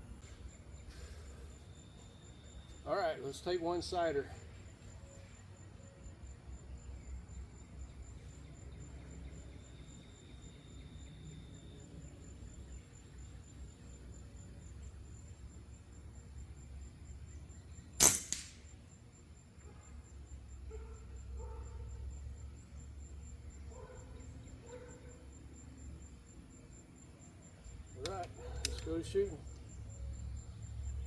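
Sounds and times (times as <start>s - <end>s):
high insect trill: 0.0s - 31.0s
air rifle shot: 18.0s - 18.6s.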